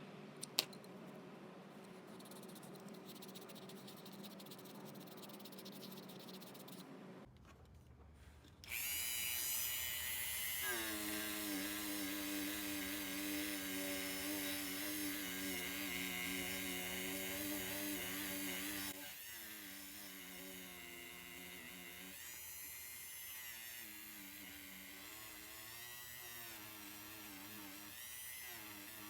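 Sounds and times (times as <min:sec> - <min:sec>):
electric motor tool whining: 0:08.6 - 0:29.0.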